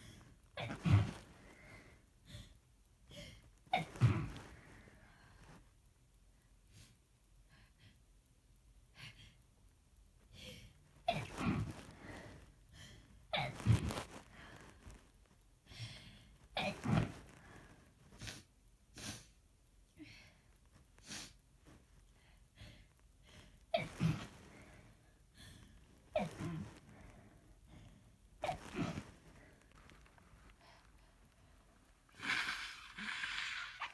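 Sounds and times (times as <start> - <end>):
person sneezing: 28.4 - 29.1.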